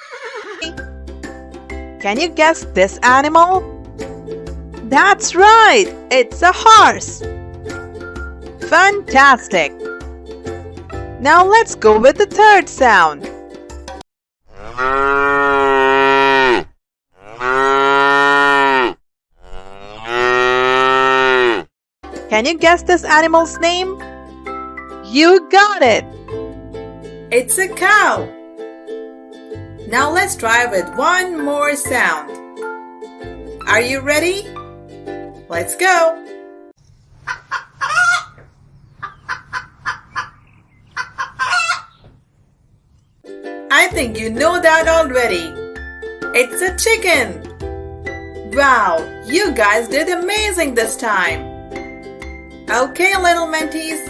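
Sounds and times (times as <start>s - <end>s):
cow mooing: 14.5s - 21.7s
chicken clucking and squawking: 37.2s - 42.0s.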